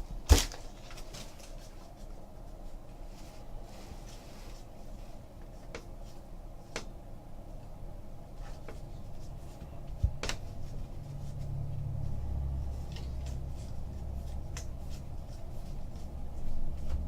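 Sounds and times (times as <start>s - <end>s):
low hum: 6.3s - 17.0s.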